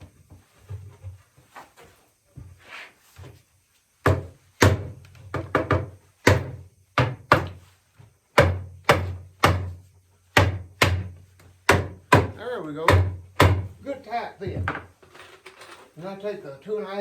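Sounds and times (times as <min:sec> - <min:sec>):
wooden knocks on chair joint: 0:04.0 - 0:07.6.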